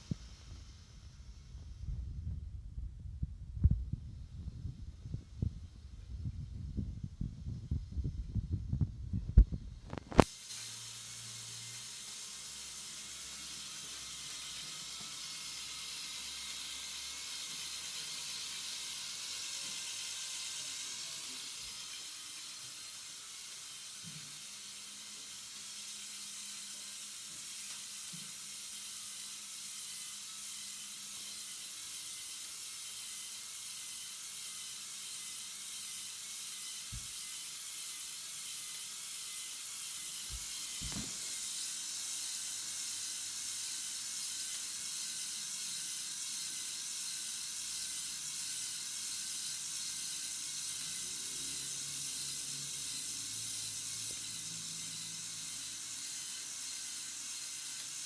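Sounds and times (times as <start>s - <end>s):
toy motor gears whirring: 0.0s - 1.7s, 6.7s - 58.0s.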